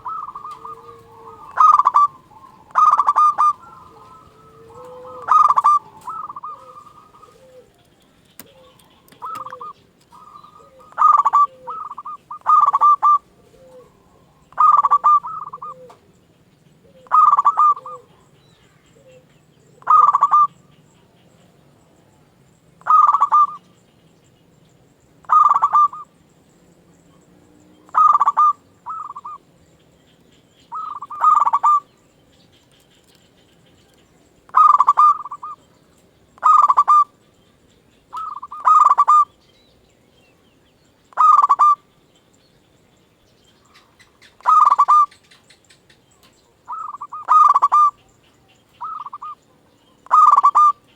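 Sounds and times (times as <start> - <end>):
faint low single coos: 0.0 - 7.8
dove cooing: 0.0 - 16.1, 16.8 - 21.1, 22.8 - 23.8, 25.2 - 26.1, 27.8 - 29.4, 30.7 - 32.0, 34.5 - 35.8, 36.4 - 37.3, 38.0 - 39.4, 41.1 - 41.9, 43.7 - 45.7, 46.5 - 50.9.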